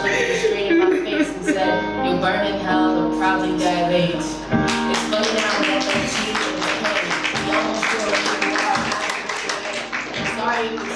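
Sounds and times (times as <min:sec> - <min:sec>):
fast percussive music: 0:04.6 - 0:10.9.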